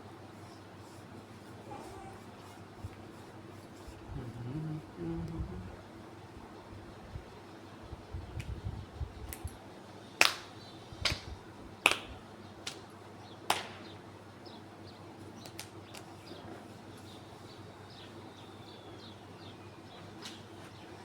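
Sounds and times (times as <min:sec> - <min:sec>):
knuckles cracking: 0:15.4 - 0:16.1.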